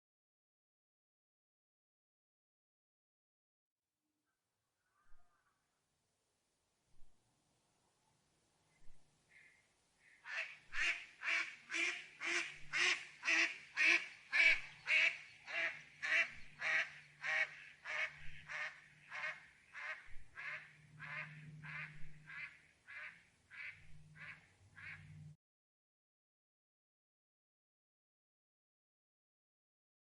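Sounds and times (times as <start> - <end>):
waterfowl calling: 9.3 - 25.2.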